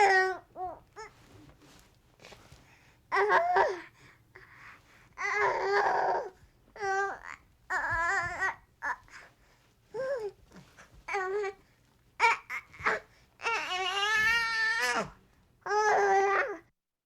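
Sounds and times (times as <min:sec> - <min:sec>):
baby crying: 0:00.0 - 0:01.1, 0:05.2 - 0:09.0, 0:12.2 - 0:16.6.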